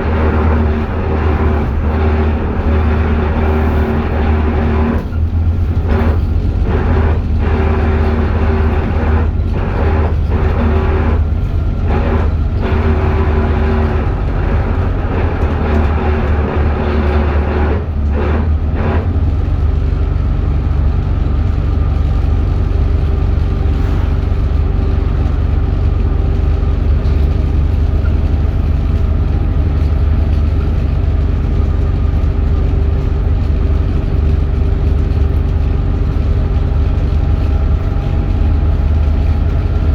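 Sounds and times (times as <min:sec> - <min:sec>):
whining tones: 0:00.0 - 0:20.2
bus engine drone: 0:00.0 - 0:39.9.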